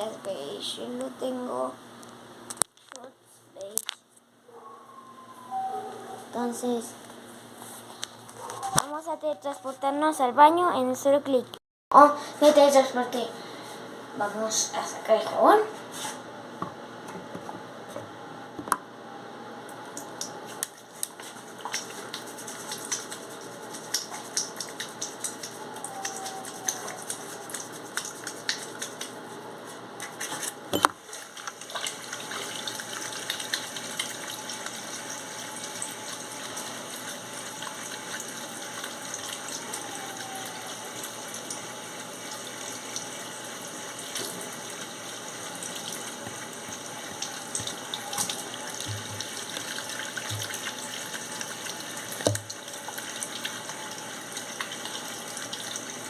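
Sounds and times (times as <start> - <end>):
hands washing with splashes: 20.0 - 29.3, 31.0 - 41.6, 43.9 - 56.0
tap running into a sink: 47.5 - 50.7, 52.1 - 52.6.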